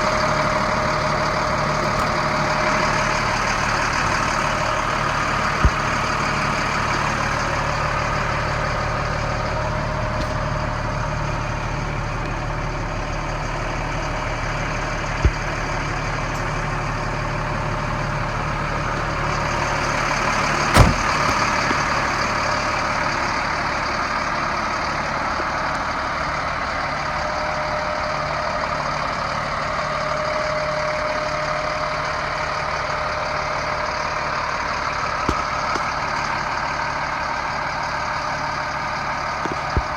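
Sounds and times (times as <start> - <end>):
diesel truck engine idling: 0.0 - 39.9
sharp knock: 20.8 - 21.5.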